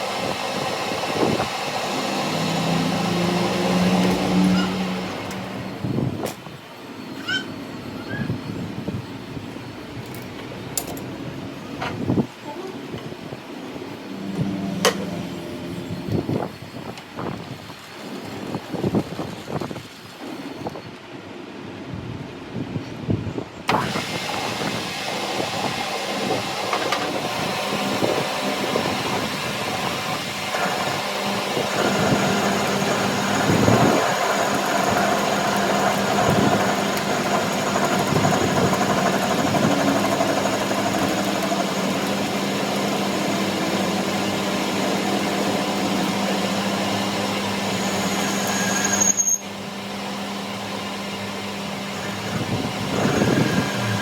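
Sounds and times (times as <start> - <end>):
machine humming: 0.0 - 6.2, 23.7 - 54.0.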